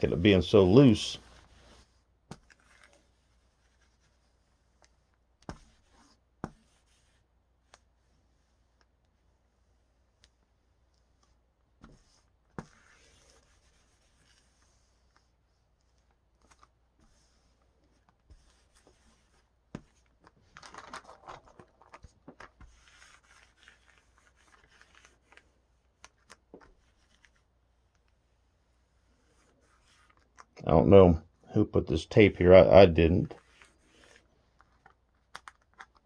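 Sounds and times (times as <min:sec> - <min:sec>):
rustling and rubbing: 0:00.2 - 0:30.6, 0:33.0 - 0:36.0.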